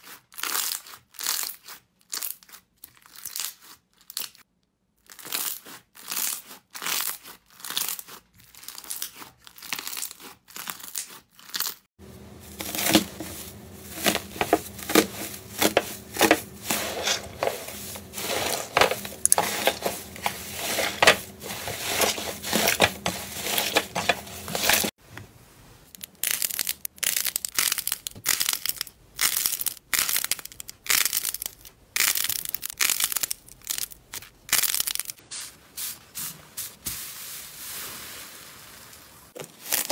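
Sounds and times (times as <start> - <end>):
steady low hum: 12.0 - 24.9.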